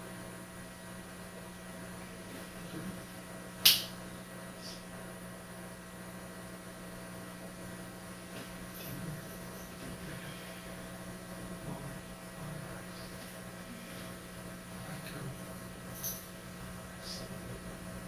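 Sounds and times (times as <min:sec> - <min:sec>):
steady electrical hum: 0:00.0 - 0:18.0
finger snap: 0:03.6 - 0:04.0.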